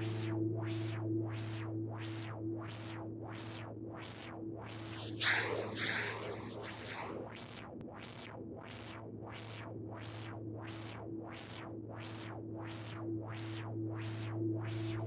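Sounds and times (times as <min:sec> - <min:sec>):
low synthesizer drone: 0:00.0 - 0:07.5
noise swooshes: 0:05.0 - 0:07.3.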